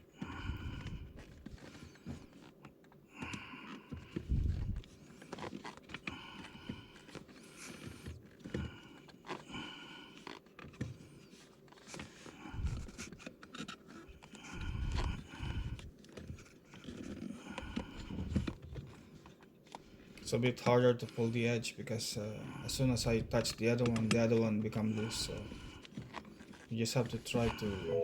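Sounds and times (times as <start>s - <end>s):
scraping and handling noise: 0.1s - 9.5s, 10.1s - 20.2s
rubber squeaking and creaking: 3.9s - 9.5s.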